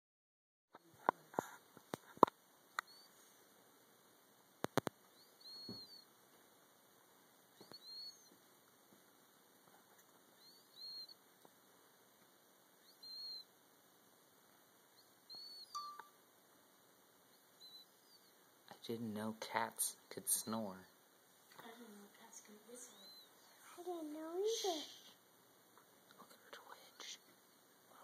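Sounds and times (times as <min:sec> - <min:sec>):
sharp clicks: 0:04.6 - 0:05.0
cat whistling through nose: 0:05.4 - 0:06.0, 0:07.7 - 0:08.2, 0:10.4 - 0:11.1, 0:13.0 - 0:13.4, 0:15.4 - 0:16.0.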